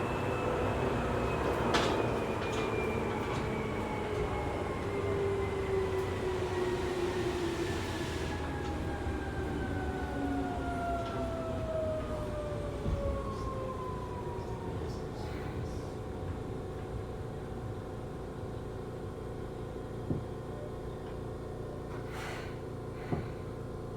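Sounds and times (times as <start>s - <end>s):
wheels rumbling on rail: 0.0s - 18.8s.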